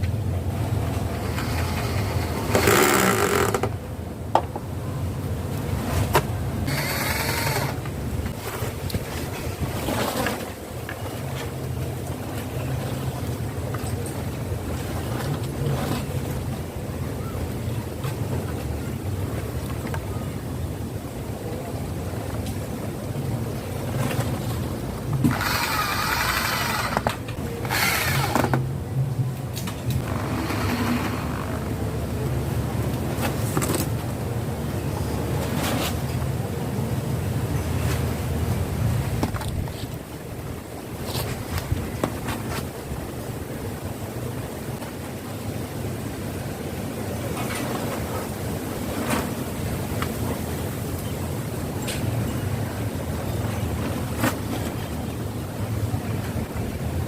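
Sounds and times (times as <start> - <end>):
woodworking tool bursts: 25.2 - 28.6.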